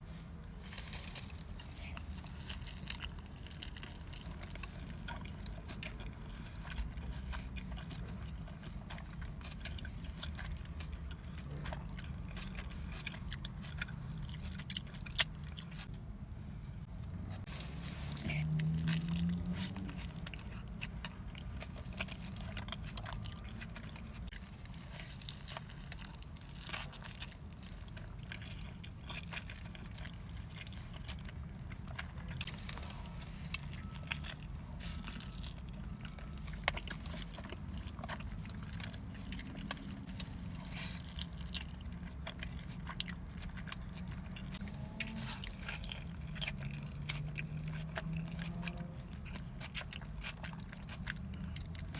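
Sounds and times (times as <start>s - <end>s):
person chewing food: 0.4s - 51.9s
low hum: 11.2s - 24.2s.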